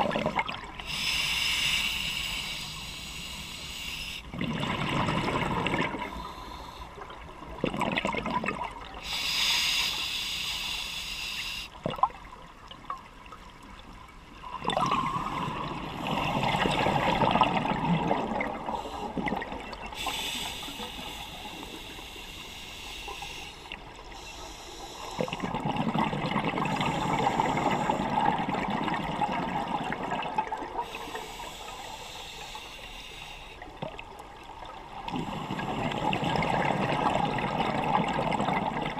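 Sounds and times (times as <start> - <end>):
diver inhaling through regulator: 0.8 - 4.3, 6.0 - 7.0, 9.0 - 11.8, 19.9 - 25.5, 26.6 - 28.2, 30.8 - 33.6
exhaled bubbles rushing: 4.3 - 6.1, 14.5 - 19.9, 25.2 - 30.8, 35.0 - 38.9.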